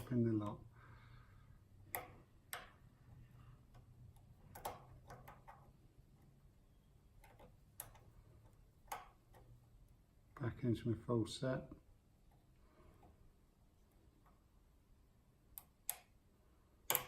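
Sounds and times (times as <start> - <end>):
faint metallic lock pick clicks: 3.6 - 5.7, 7.2 - 9.5.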